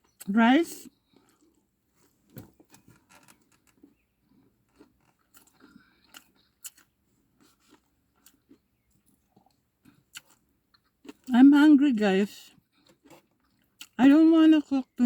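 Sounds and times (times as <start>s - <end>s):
person chewing food: 0.9s - 11.3s, 12.5s - 14.0s.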